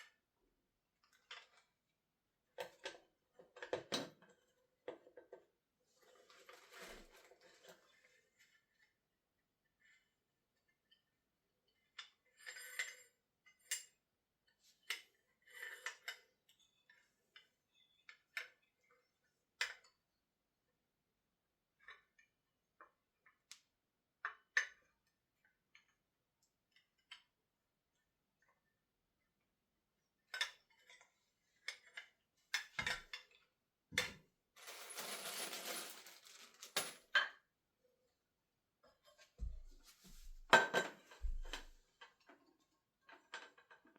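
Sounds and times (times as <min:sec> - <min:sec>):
metal parts clinking: 0:34.6 - 0:37.0
packaging rustling: 0:34.8 - 0:36.7.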